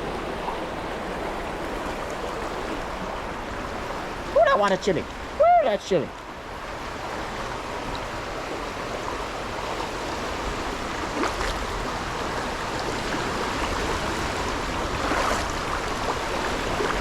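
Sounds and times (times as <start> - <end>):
faint water splashes: 0.0 - 17.0
stream flowing over rocks: 0.0 - 17.0.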